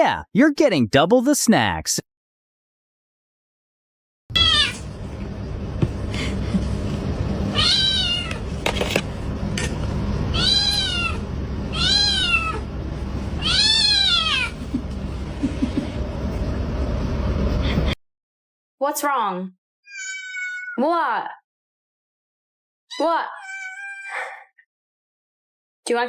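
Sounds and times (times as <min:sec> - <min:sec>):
low background hum: 0:04.3 - 0:18.0
cat meowing: 0:04.4 - 0:04.8, 0:07.5 - 0:08.4, 0:10.3 - 0:12.7, 0:13.4 - 0:14.6, 0:19.9 - 0:20.8, 0:22.9 - 0:24.2.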